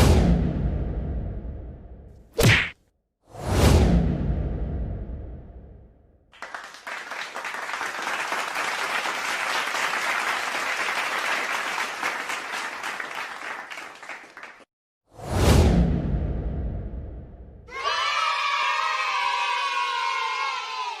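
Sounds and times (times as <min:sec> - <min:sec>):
crowd clapping: 0:06.3 - 0:14.7.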